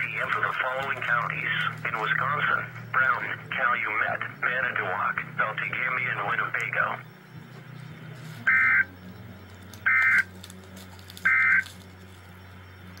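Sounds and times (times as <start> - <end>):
steady low hum: 0.0 - 13.0
warbling digital tone bursts: 8.5 - 8.9.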